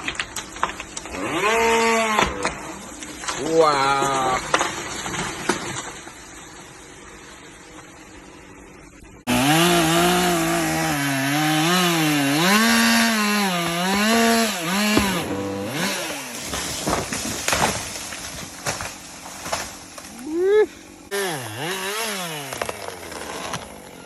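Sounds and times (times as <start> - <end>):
chainsaw cutting wood: 0.0 - 3.4, 9.3 - 24.0.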